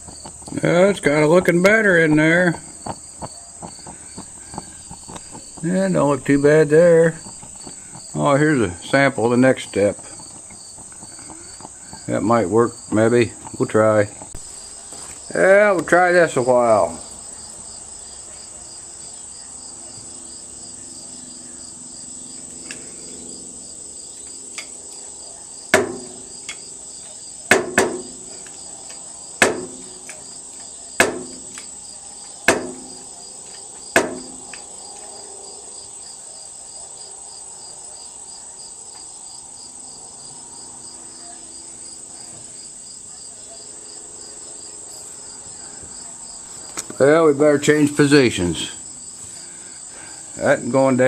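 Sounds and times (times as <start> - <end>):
crickets chirping: 0.0 - 51.0
hammer blows on metal: 25.7 - 26.6, 27.5 - 28.4, 29.4 - 30.2, 31.0 - 31.7, 32.5 - 33.1, 33.9 - 34.5.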